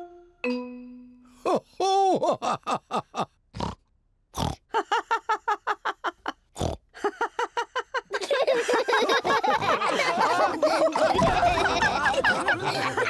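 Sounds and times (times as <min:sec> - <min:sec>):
cartoon pig snorting: 0:03.5 - 0:03.8, 0:04.4 - 0:04.6, 0:06.6 - 0:06.8
cartoon pig laughing: 0:07.1 - 0:13.0.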